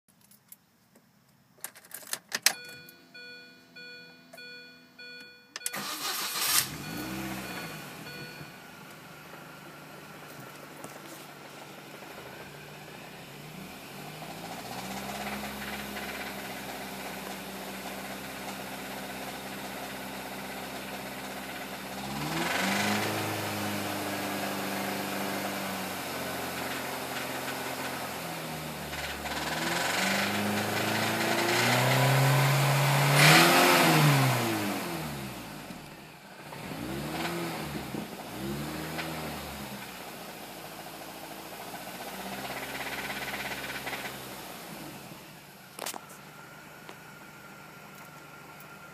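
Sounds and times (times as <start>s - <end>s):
car engine idling and revving: 2.6s - 48.9s
engine clacking and clicking: 14.9s - 18.6s, 28.9s - 31.8s, 41.6s - 44.5s.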